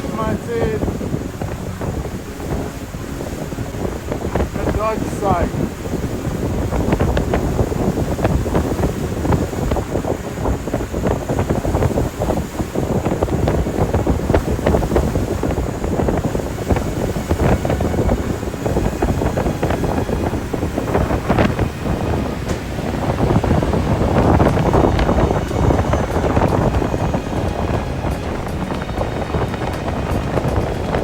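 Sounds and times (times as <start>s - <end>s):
wind buffeting microphone: 0.0s - 31.0s.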